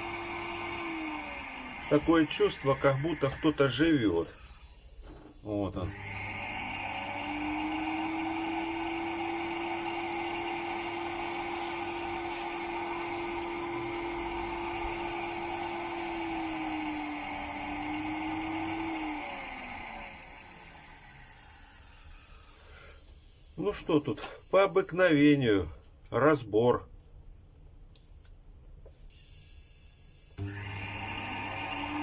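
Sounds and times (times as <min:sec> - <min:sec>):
vacuum motor whine: 0:00.0 - 0:04.6, 0:05.8 - 0:22.6, 0:30.4 - 0:32.0.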